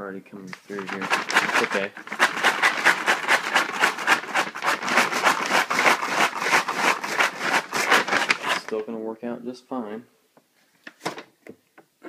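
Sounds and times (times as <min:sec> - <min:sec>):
paper bag rustling: 0:00.4 - 0:08.9
popcorn rattling in paper bag: 0:00.5 - 0:08.9.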